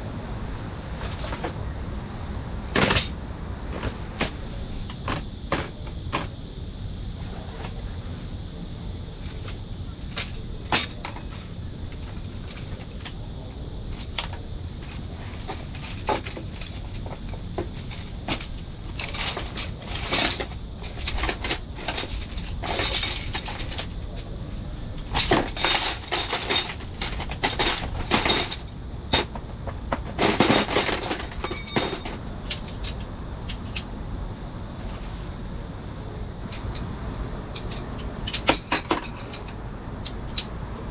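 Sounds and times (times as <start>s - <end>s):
steady low rumble: 0.0s - 40.9s
metal frame parts clinking: 25.0s - 29.3s.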